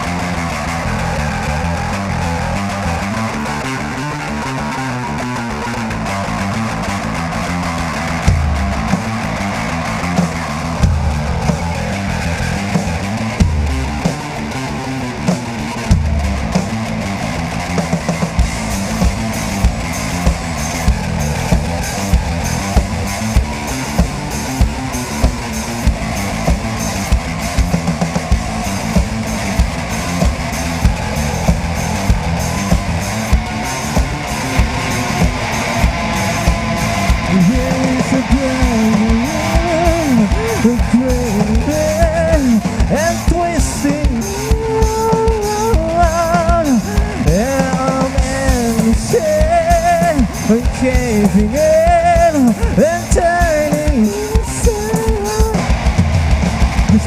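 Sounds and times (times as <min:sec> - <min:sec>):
bass guitar: 0:00.0 - 0:57.0
distorted electric guitar: 0:00.0 - 0:57.0
drum kit beat: 0:05.7 - 0:57.0.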